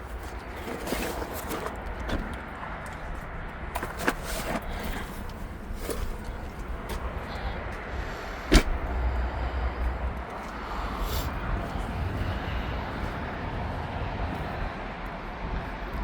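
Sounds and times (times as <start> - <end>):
steady low rumble: 0.0 - 16.0
car door slamming: 8.5 - 8.9.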